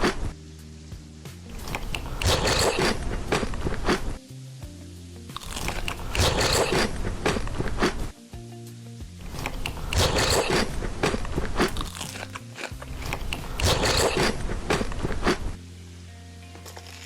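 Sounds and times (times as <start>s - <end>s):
soft background music: 0.1s - 17.0s
crunchy food being chewed: 1.5s - 4.2s, 5.4s - 8.1s, 9.3s - 15.6s.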